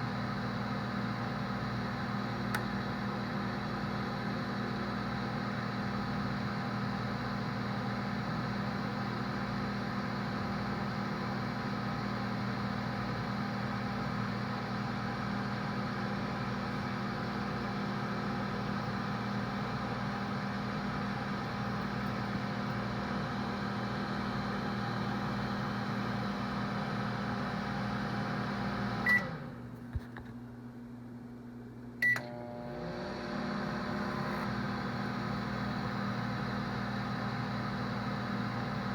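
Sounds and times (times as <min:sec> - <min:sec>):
microwave oven humming: 0:00.0 - 0:38.9
microwave click: 0:02.4 - 0:02.9, 0:32.0 - 0:32.4
microwave beep: 0:28.4 - 0:29.5, 0:32.0 - 0:32.8.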